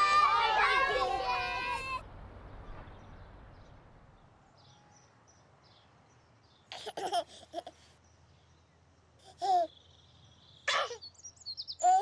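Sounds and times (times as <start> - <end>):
babbling voices: 0.0 - 2.0
outdoor background: 0.0 - 12.0.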